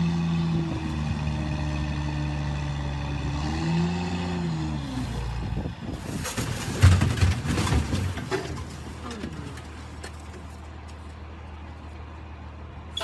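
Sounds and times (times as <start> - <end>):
noisy clattering: 6.0 - 10.6.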